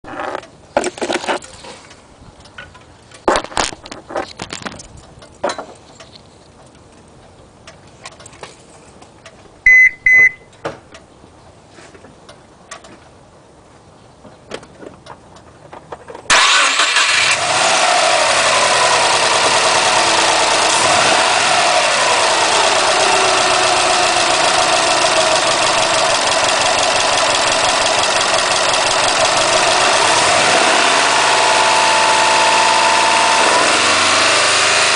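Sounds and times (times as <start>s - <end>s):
short beeps: 9.6s - 10.6s
car engine starting and idling: 16.3s - 34.9s.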